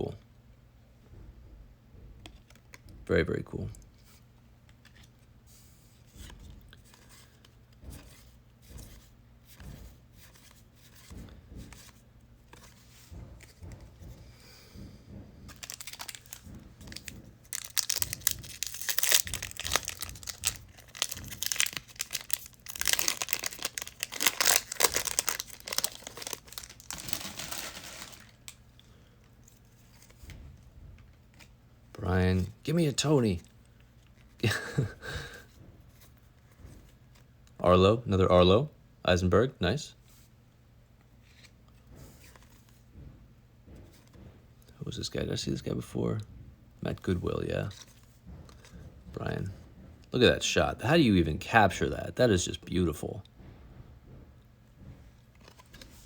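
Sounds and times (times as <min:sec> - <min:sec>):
card pack wrapper tearing and rustling: 0:15.5 - 0:28.6.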